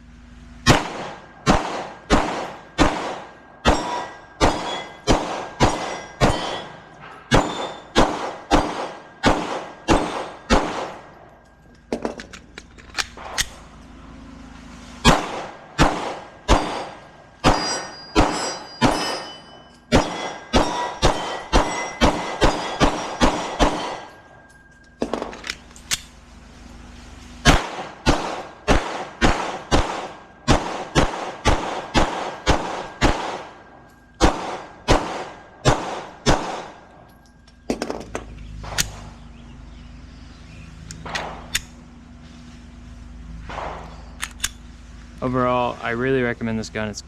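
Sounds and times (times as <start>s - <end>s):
pistol shots: 0.6s - 11.3s, 15.0s - 24.2s, 27.4s - 37.0s, 43.5s - 44.6s.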